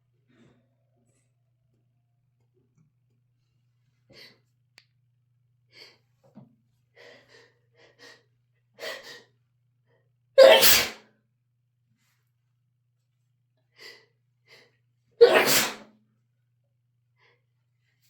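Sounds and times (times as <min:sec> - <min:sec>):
person sneezing loudly: 0:10.4 - 0:11.0, 0:15.2 - 0:15.8.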